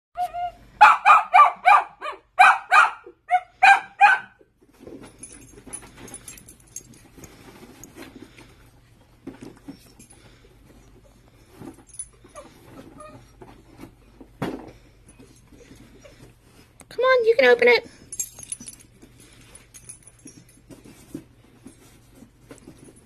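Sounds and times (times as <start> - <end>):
dog barking excitedly: 0.8 - 4.4
faint jingling: 5.0 - 8.0, 17.9 - 21.0.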